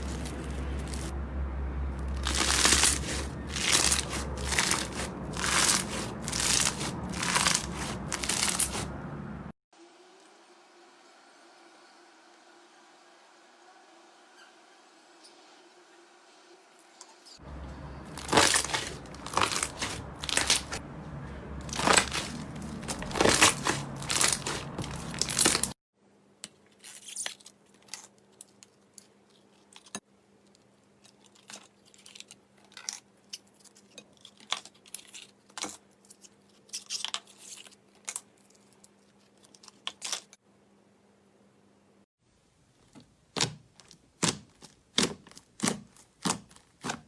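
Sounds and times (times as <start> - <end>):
slime crackling and popping: 2.1 - 8.8, 18.1 - 20.8, 21.7 - 25.8.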